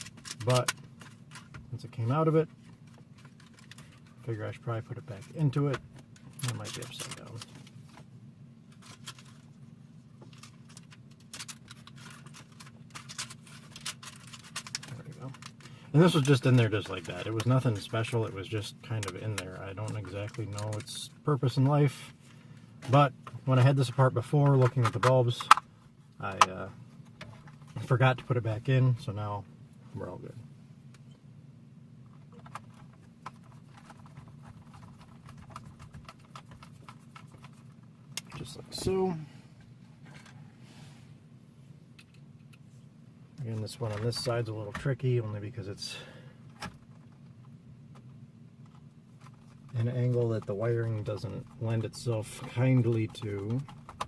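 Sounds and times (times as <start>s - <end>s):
steady low hum: 0.0s - 54.0s
plastic clicks and rattles: 10.3s - 15.6s.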